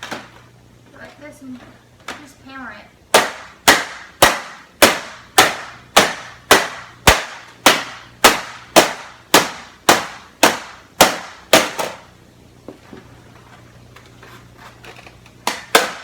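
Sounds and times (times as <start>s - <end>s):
hammer striking printer parts: 3.1s - 12.0s, 15.5s - 16.0s.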